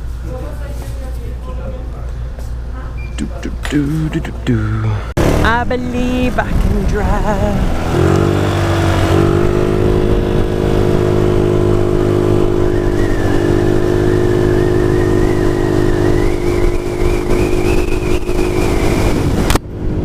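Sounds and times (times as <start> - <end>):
scooter engine running: 5.2 - 20.0.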